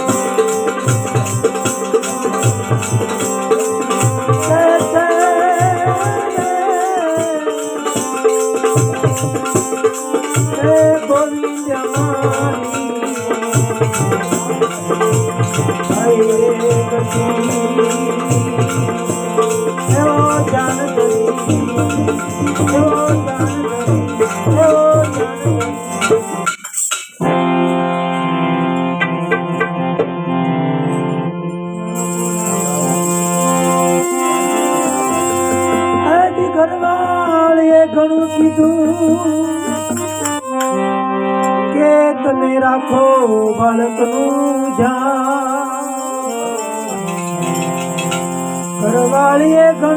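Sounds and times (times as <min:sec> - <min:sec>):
hand drum rhythm: 0:00.0 - 0:27.4, 0:29.0 - 0:30.2, 0:46.9 - 0:49.7
jingling percussion: 0:00.0 - 0:28.2, 0:31.5 - 0:36.1, 0:38.2 - 0:41.6, 0:42.9 - 0:49.9
wavering melody line: 0:31.7 - 0:40.6, 0:46.4 - 0:49.7.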